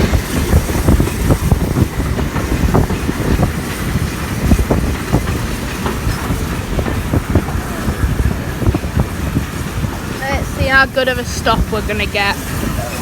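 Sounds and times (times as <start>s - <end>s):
train coach rumbling on track: 0.0s - 13.0s
wheels clicking over rail joints: 0.0s - 13.0s.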